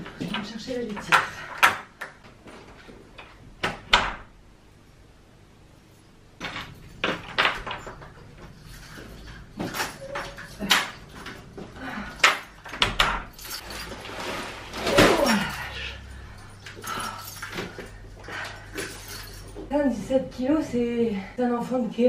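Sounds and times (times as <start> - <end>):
keys jingling and clacking: 6.4 - 11.6, 12.5 - 13.9, 15.9 - 19.7.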